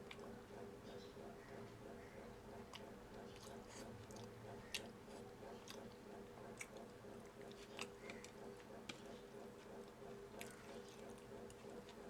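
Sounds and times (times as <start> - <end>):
person chewing food: 2.7 - 6.0.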